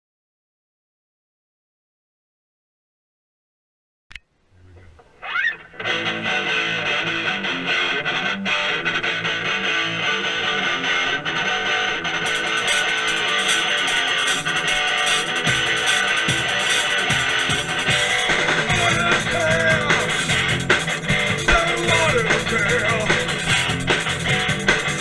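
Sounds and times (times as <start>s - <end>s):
distorted electric guitar strumming: 4.6s - 25.0s
rock band playing: 5.4s - 25.0s.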